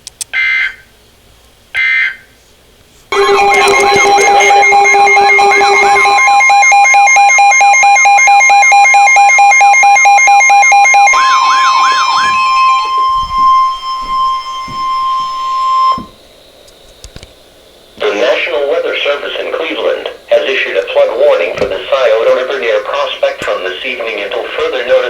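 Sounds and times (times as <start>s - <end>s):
overlapping electronic beeps: 3.1s - 16.0s
steady alert tone: 3.1s - 16.1s
warbling siren-like sweeps: 3.1s - 16.1s.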